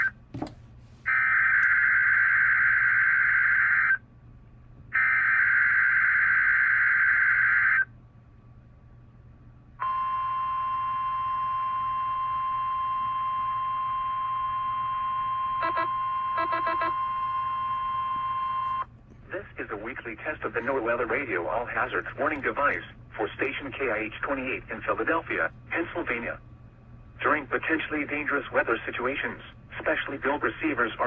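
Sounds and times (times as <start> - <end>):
steady warning alarm tone: 1.1 - 4.0, 5.0 - 7.9, 9.8 - 18.9
buzzy digital data tones: 15.6 - 18.8.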